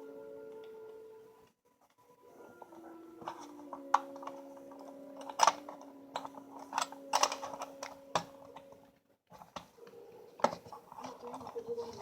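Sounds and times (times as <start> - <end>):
clicks of toy train parts: 3.3 - 8.6.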